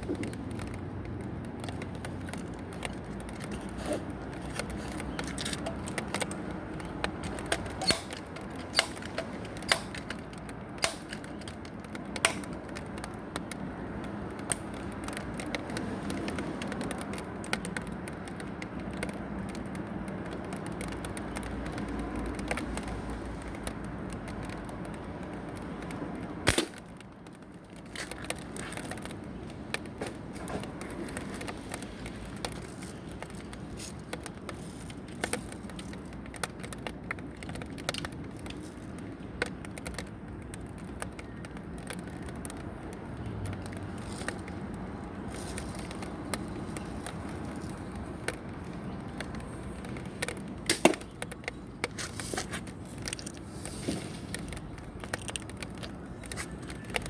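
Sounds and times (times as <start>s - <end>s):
small clicks and crackles: 0.0s - 57.0s
air gun shots cracking: 26.5s - 26.8s.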